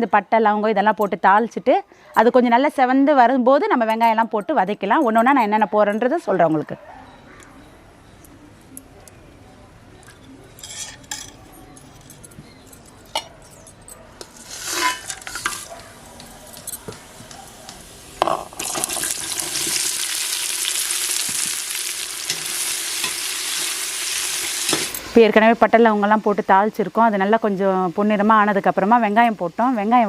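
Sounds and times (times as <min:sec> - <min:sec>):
spices clinking into pot: 0:10.0 - 0:25.0
spices crackling in oil: 0:14.2 - 0:25.0
onions sizzling in hot oil: 0:14.3 - 0:15.7, 0:17.0 - 0:29.7.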